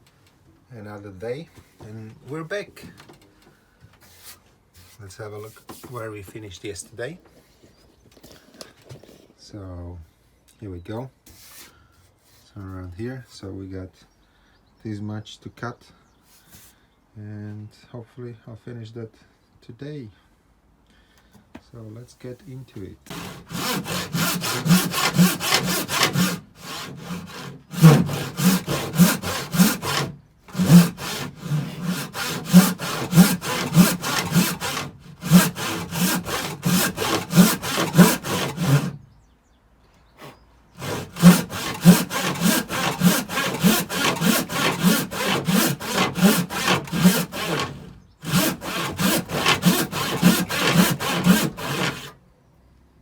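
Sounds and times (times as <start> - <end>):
handsaw cutting timber: 23.1 - 39.0, 40.2 - 52.2.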